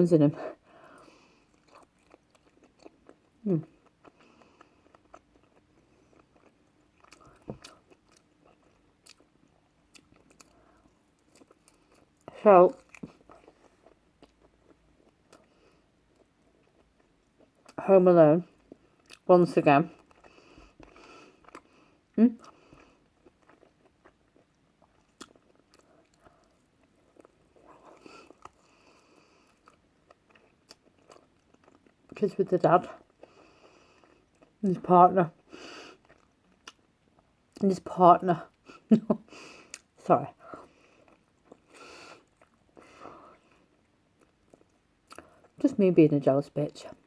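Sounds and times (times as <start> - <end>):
chewing and biting: 1.4 - 17.8, 19.9 - 21.8, 22.4 - 32.2, 36.0 - 36.9, 40.5 - 45.6.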